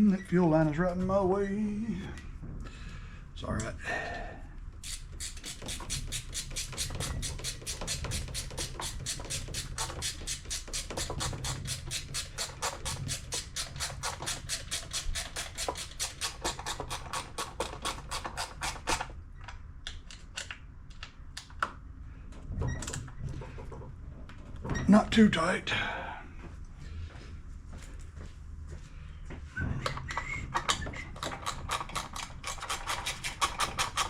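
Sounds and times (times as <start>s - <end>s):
ratchet wrench clicking: 31.2s - 34.0s.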